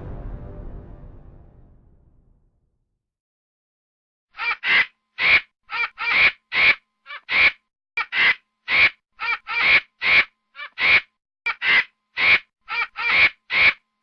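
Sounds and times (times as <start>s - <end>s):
monkey calling: 4.4s - 13.8s.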